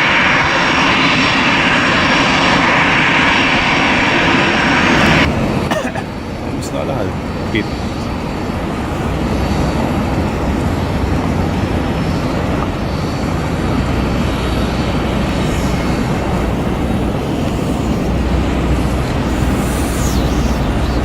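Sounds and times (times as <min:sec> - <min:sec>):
airliner engines rumbling: 0:00.0 - 0:21.0.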